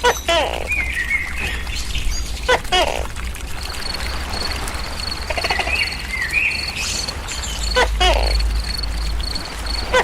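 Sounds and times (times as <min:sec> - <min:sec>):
low steady hum: 0:00.0 - 0:10.0
insect chirping: 0:03.6 - 0:10.0
bird-like wavering chirp: 0:05.0 - 0:10.0.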